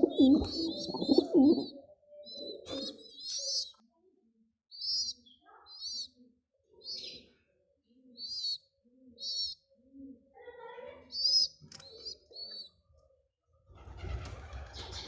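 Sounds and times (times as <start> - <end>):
pigeons cooing: 0.0 - 3.5
pigeon squeaky calls: 0.0 - 3.8, 4.8 - 6.1, 8.2 - 8.6, 9.2 - 9.6, 11.2 - 12.8.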